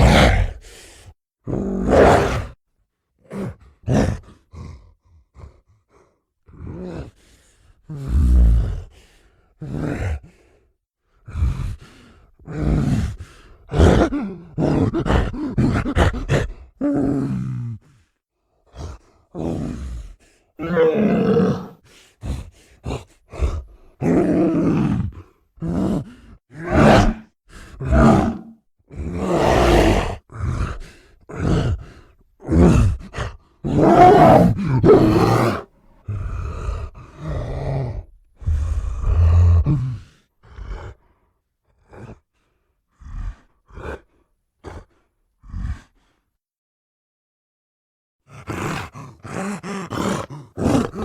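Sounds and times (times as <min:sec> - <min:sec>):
gorilla roaring: 0:00.0 - 0:00.6, 0:01.5 - 0:02.6, 0:20.6 - 0:21.8, 0:24.0 - 0:31.7, 0:32.5 - 0:39.9, 0:48.4 - 0:51.0
gorilla grunts: 0:20.6 - 0:21.8, 0:23.4 - 0:40.9, 0:48.4 - 0:51.0.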